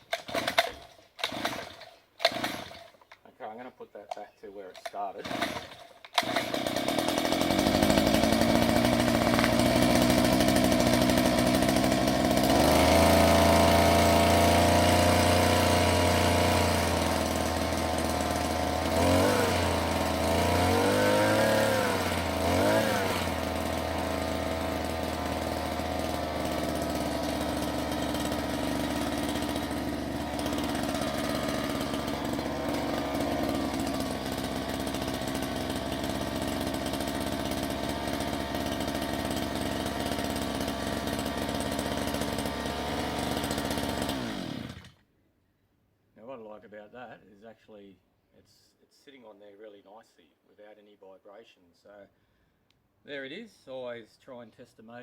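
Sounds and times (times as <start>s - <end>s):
outboard motor running and revving: 0.3s - 2.8s, 5.2s - 45.0s.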